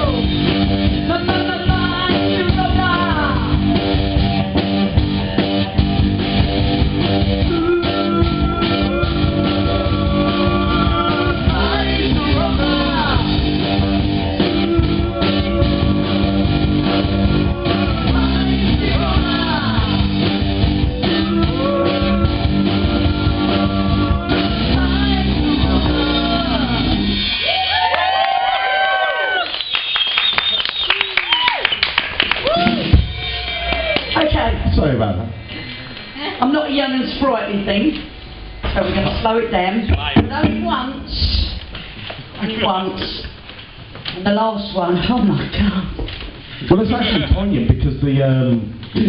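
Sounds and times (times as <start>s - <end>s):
steady drum beat: 0.0s - 27.9s, 32.4s - 35.0s, 38.6s - 42.0s
electric guitar: 0.0s - 28.0s
bass guitar: 0.0s - 28.3s, 32.4s - 43.4s
person singing: 1.0s - 3.6s, 7.4s - 13.4s, 14.2s - 27.0s.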